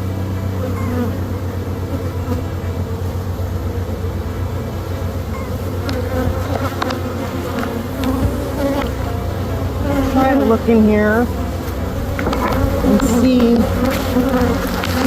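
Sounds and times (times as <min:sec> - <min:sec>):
bees buzzing: 0:00.0 - 0:15.0.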